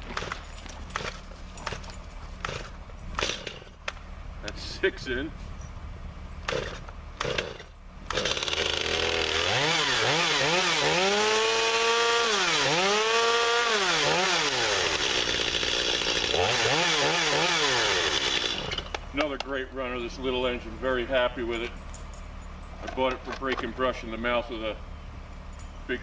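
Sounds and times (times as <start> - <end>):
chainsaw engine revving: 0.0 - 1.8, 2.4 - 3.7, 6.4 - 19.1.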